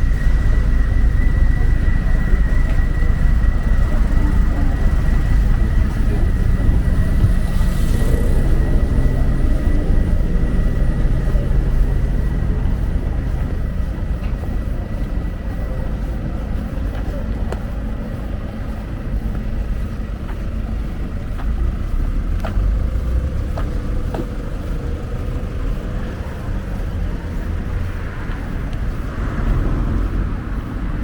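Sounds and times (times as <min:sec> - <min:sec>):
road traffic rumble: 0:00.0 - 0:31.0.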